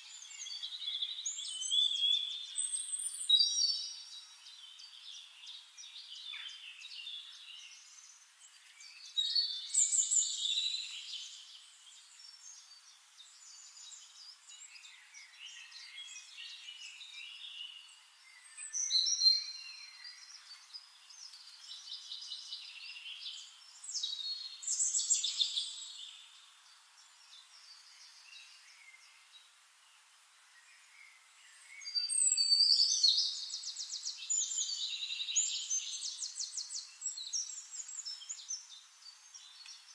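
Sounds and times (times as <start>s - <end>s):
birds singing and chirping: 0.0s - 39.9s.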